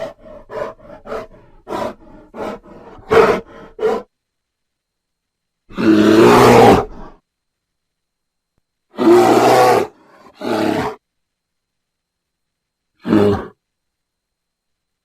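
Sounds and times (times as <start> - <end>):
bear growling: 0.0 - 4.1, 5.7 - 7.2, 8.9 - 11.0
bear grunting: 0.0 - 4.1.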